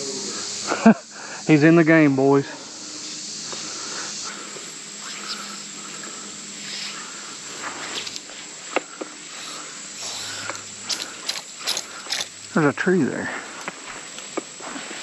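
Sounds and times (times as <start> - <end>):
insects chirping: 0.0 - 15.0.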